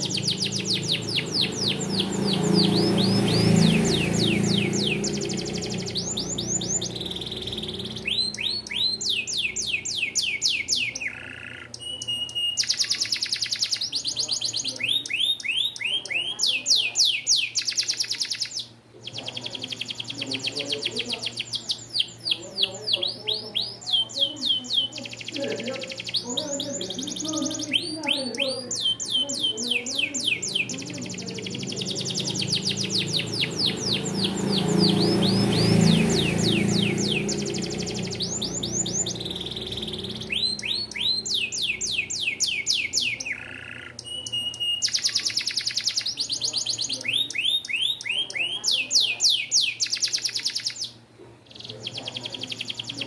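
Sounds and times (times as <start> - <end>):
canary singing trills: 0.0 - 53.0.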